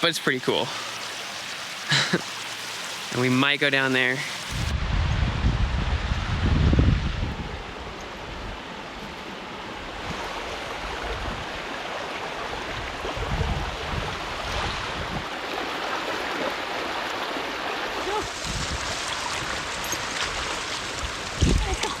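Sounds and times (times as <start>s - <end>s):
creek water rushing: 0.0s - 4.7s, 7.5s - 22.0s
wind on microphone: 4.5s - 8.6s, 9.9s - 11.6s, 12.6s - 15.4s, 18.1s - 22.0s.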